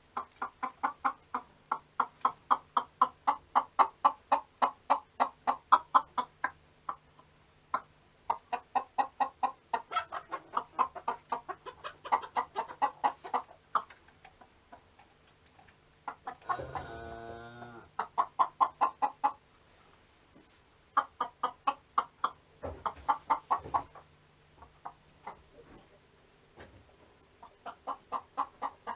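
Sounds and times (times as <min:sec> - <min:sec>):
chickens clucking: 0:00.0 - 0:26.0, 0:26.6 - 0:28.9
chicken drawn-out call: 0:16.2 - 0:18.6.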